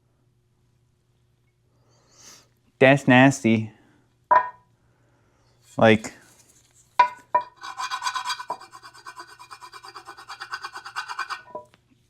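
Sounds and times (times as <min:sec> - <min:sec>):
sharp metal knocks: 0:04.3 - 0:04.6
metallic rasping: 0:07.4 - 0:11.7.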